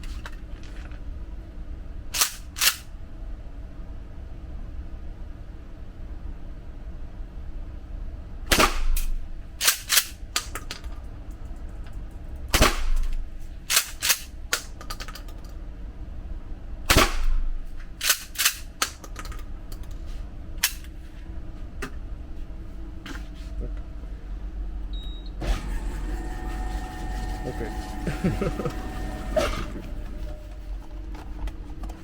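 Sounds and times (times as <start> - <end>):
loud gunshots: 8.5 - 9.0, 16.9 - 17.5.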